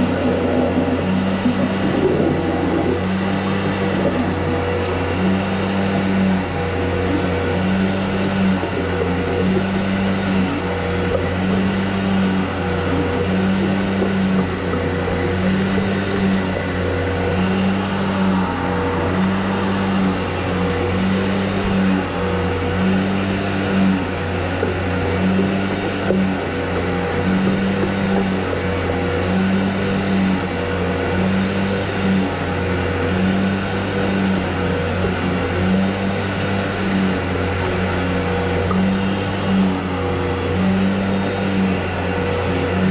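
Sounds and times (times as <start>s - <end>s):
drain cleaning machine humming: 0.0s - 42.9s.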